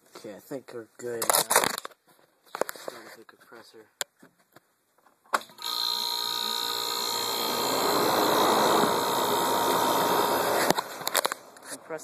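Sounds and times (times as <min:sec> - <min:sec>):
air conditioner compressor humming: 0:05.6 - 0:11.0.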